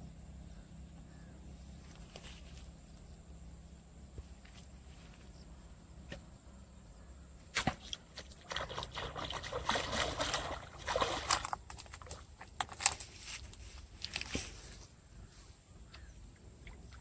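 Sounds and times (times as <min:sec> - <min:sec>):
water splashing and sloshing: 0:07.4 - 0:14.9, 0:15.8 - 0:17.0.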